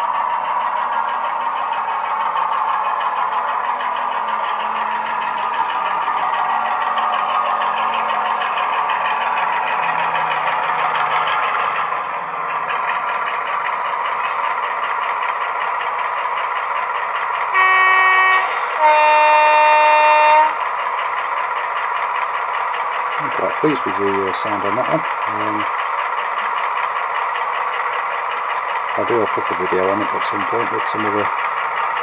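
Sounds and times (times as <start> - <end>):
model diesel engine sound: 0.0 - 32.0
two-tone train horn: 17.5 - 20.6.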